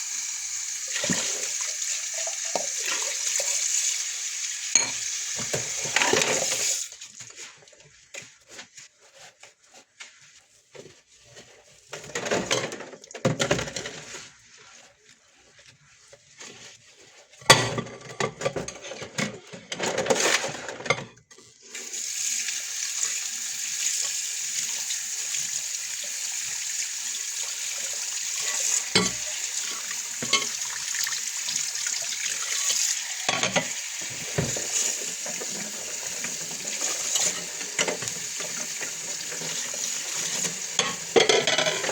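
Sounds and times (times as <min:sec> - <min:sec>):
tap water running into sink: 0:00.0 - 0:07.0, 0:21.8 - 0:41.9
dishes and pots clattering: 0:04.8 - 0:06.7, 0:12.0 - 0:14.2, 0:17.5 - 0:21.2, 0:28.4 - 0:30.7, 0:33.2 - 0:39.6, 0:40.2 - 0:41.9
scrubbing at a sink: 0:04.8 - 0:20.5, 0:21.5 - 0:41.9.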